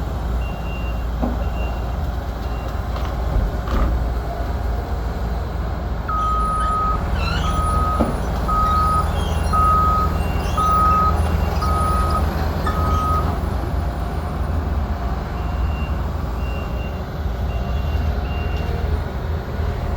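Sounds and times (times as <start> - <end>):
heavy vehicle engine running: 0.0 - 19.9
reversing alarm beeping: 6.1 - 13.6.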